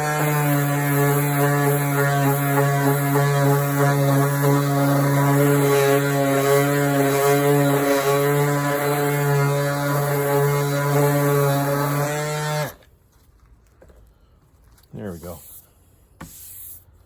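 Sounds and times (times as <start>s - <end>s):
orbital sander running: 0.0s - 12.8s.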